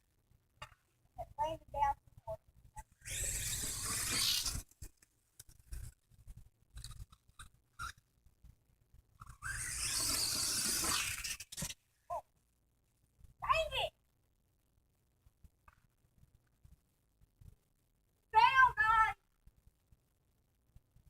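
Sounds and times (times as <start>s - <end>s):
rc car motor whirring: 2.8s - 4.8s, 9.2s - 11.8s.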